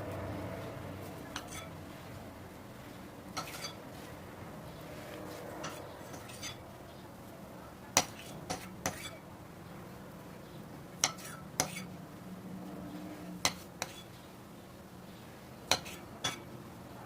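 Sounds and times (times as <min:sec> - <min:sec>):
utensils clinking against dishes: 0:01.4 - 0:01.8, 0:03.4 - 0:03.8, 0:05.6 - 0:06.6.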